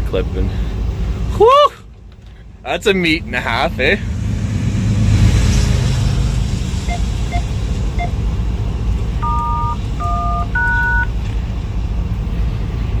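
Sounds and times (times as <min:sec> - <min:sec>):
road noise: 0:00.0 - 0:13.0
vehicle engine rumble: 0:00.0 - 0:13.0
dual-tone keypad beeps: 0:09.2 - 0:11.1.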